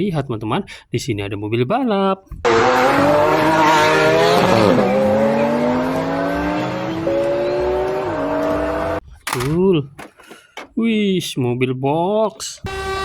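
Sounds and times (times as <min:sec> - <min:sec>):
race car engine accelerating: 0:02.5 - 0:09.0.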